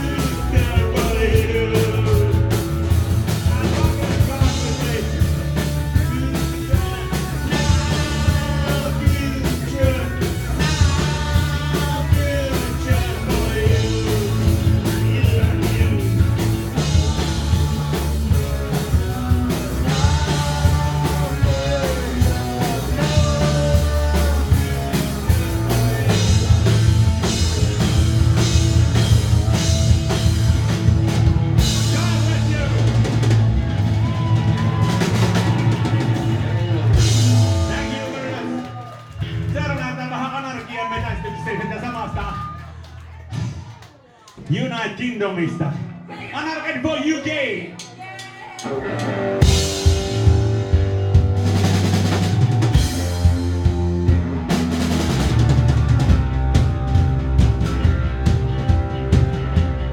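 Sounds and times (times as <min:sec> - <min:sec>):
person singing: 0:00.0 - 0:26.9
punk rock band playing live: 0:00.0 - 0:43.6, 0:47.7 - 0:59.9.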